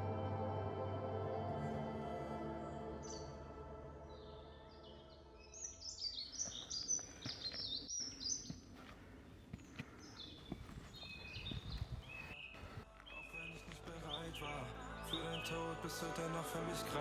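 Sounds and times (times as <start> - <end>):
soft held music chord: 0.0 - 5.6
songbirds chirping and singing: 0.0 - 17.0.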